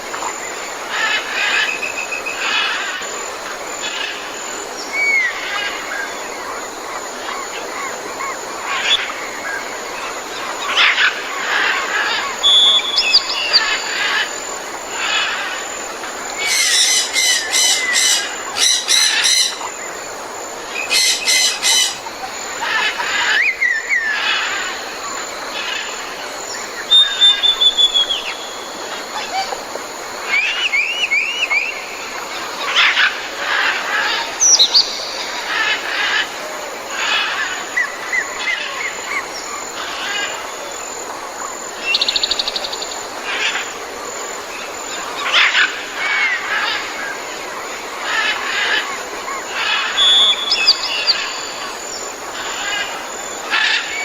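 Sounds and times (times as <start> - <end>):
birds calling and singing: 0.0 - 54.0
steady background hiss: 0.0 - 54.0
loud rapid pulsed bird calls: 4.9 - 19.8, 20.7 - 22.1
bird trill: 10.6 - 14.3, 16.4 - 19.7, 20.8 - 22.1, 26.8 - 29.6, 48.1 - 52.9
looping bird whistles: 12.4 - 13.4, 26.9 - 28.5.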